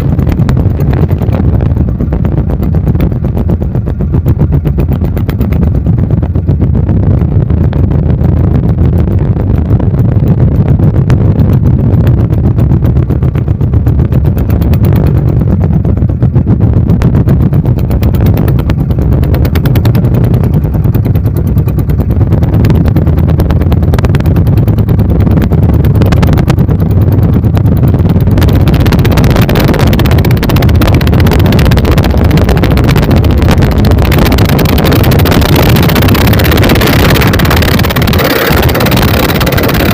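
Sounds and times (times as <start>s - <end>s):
diesel boat engines running: 0.0s - 39.9s.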